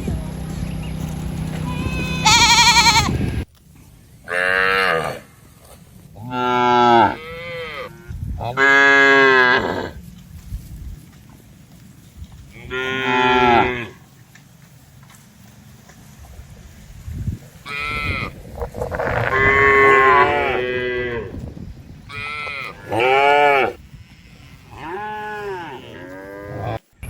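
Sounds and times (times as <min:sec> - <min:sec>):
cattle mooing: 0:04.3 - 0:05.3, 0:06.2 - 0:10.0, 0:12.5 - 0:14.0, 0:17.6 - 0:21.4, 0:22.1 - 0:26.8.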